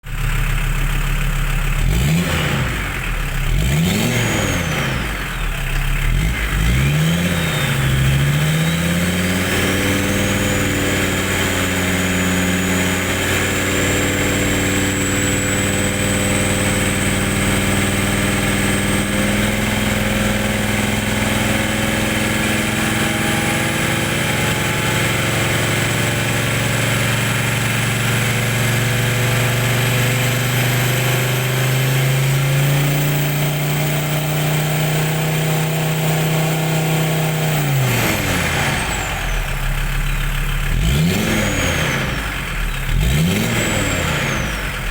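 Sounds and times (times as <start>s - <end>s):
turbocharged engine revving: 0.0s - 44.9s.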